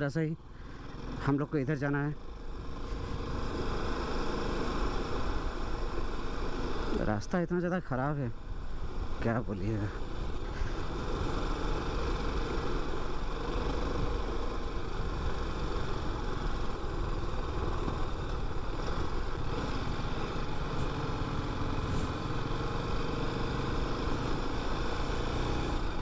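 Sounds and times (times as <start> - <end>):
motorcycle engine running: 0.0 - 7.2, 8.3 - 26.0
wind and road noise: 0.0 - 26.0.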